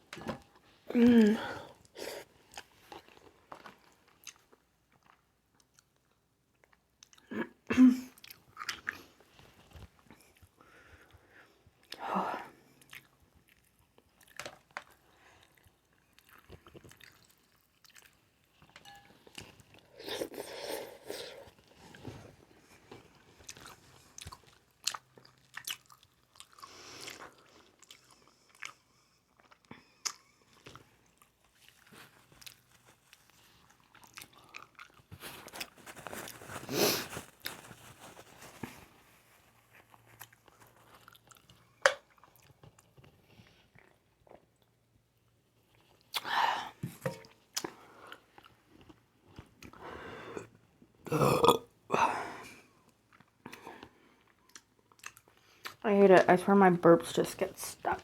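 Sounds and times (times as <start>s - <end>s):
person chewing food: 0.0s - 7.3s, 8.1s - 12.0s, 12.6s - 51.8s, 52.5s - 55.8s
short burps: 51.1s - 52.0s.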